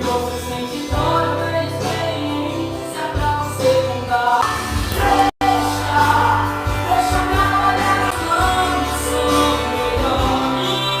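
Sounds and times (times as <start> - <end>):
steady bass line: 0.0 - 11.0
woman singing: 5.0 - 11.0.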